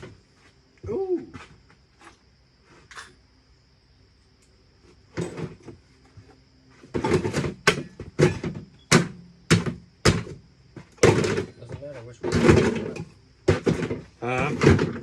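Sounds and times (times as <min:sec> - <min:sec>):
parts knocking and clunking: 0:05.0 - 0:15.0.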